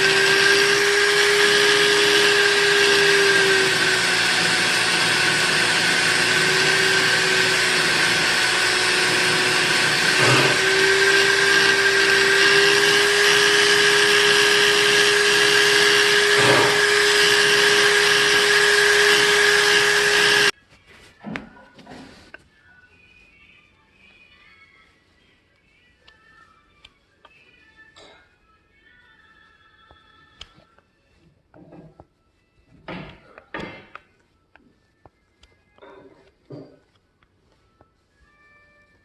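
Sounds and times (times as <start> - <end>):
electric buffing machine running: 0.0 - 20.5.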